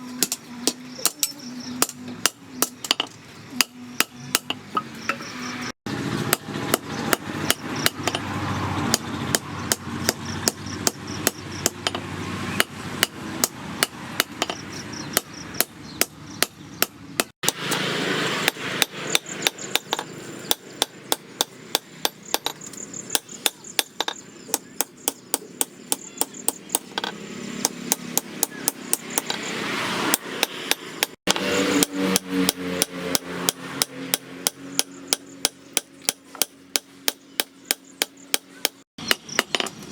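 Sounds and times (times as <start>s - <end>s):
hammer striking steel: 0.2s - 5.2s, 6.2s - 29.5s, 30.1s - 39.8s.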